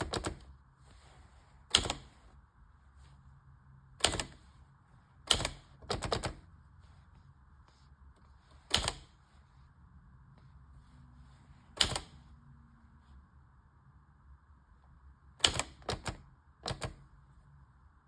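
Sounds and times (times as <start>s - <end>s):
typewriter key strikes: 15.4s - 17.0s.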